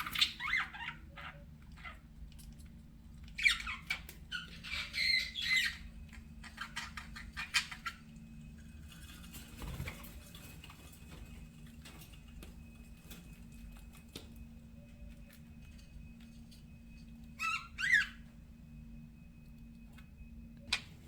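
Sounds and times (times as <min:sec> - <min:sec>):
faint steady hum: 0:00.0 - 0:21.0
budgerigars chirping: 0:03.4 - 0:08.0, 0:17.4 - 0:18.1.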